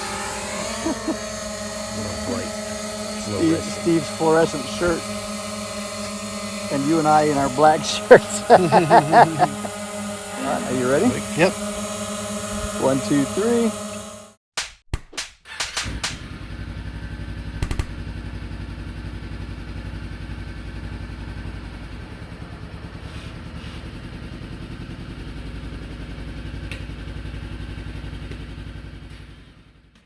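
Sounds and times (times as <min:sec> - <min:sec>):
motorcycle engine running: 0:00.0 - 0:14.4, 0:15.9 - 0:30.0
sharp clack: 0:14.6 - 0:16.2.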